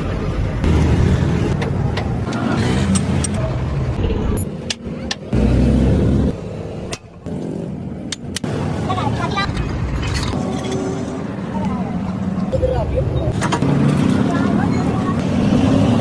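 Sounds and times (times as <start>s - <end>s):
sharp clicks and knocks: 8.0s - 8.6s.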